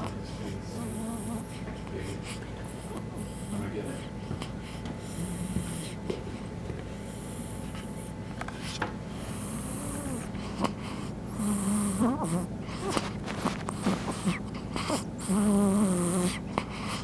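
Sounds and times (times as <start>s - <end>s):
baby snoring: 0.0s - 4.1s, 5.0s - 6.0s, 9.1s - 17.0s.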